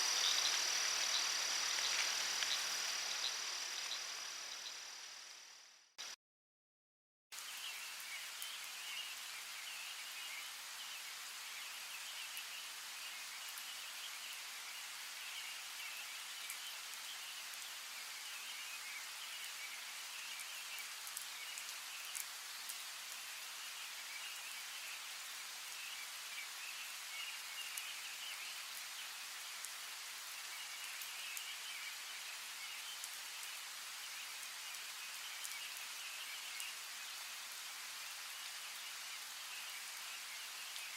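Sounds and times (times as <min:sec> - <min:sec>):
chirring frogs or insects: 0:00.0 - 0:05.8
steady rain: 0:00.0 - 0:06.2, 0:07.4 - 0:40.9.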